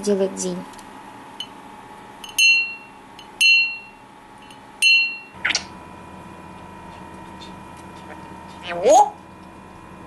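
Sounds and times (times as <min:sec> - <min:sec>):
bright bell dings: 0:02.2 - 0:04.0, 0:04.8 - 0:05.4.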